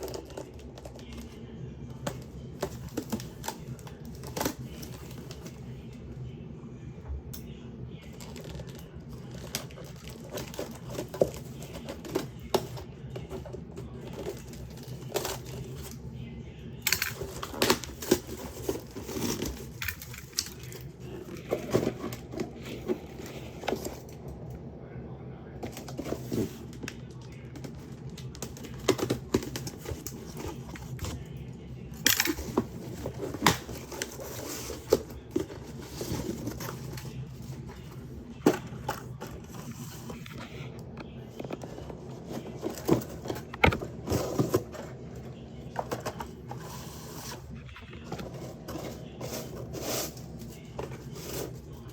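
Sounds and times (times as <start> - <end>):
steady low hum: 0.0 - 51.9
packaging crinkling and rustling: 8.0 - 16.0.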